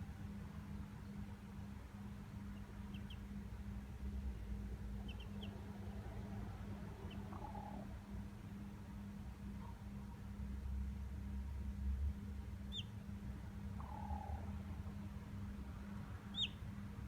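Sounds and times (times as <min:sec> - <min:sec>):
steady low hum: 0:00.0 - 0:17.0
chicks peeping: 0:02.8 - 0:03.2, 0:05.0 - 0:05.7, 0:12.7 - 0:12.9, 0:16.3 - 0:16.6.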